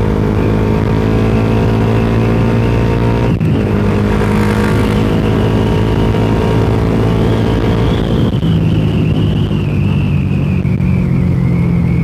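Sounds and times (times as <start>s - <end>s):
motorcycle engine running: 0.0s - 9.5s.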